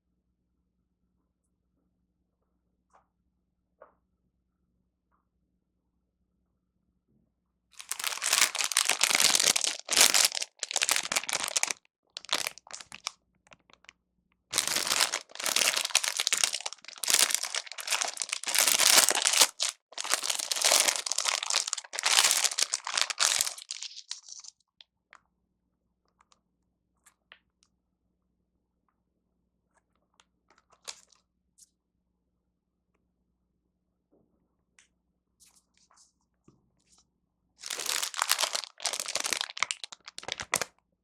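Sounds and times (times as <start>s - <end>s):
plastic wrapper crinkling and tearing: 7.8s - 13.9s, 14.5s - 24.5s, 37.6s - 40.7s.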